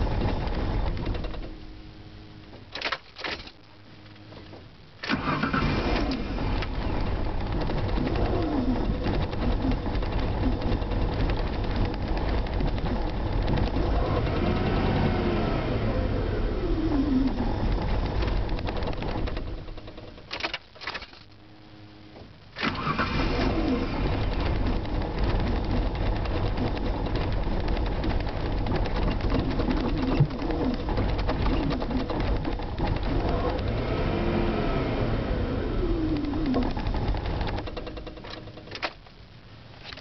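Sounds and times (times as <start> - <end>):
vehicle engine sputtering and starting: 5.1 - 20.4, 22.6 - 38.9.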